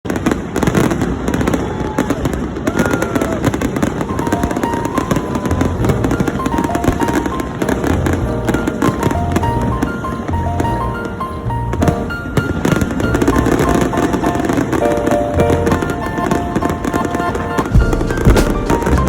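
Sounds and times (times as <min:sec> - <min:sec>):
fireworks crackling and popping: 0:00.1 - 0:19.0
music with short-note melody: 0:04.1 - 0:19.0
bass beat: 0:05.5 - 0:06.2, 0:07.9 - 0:12.1, 0:15.4 - 0:16.1, 0:17.8 - 0:19.0.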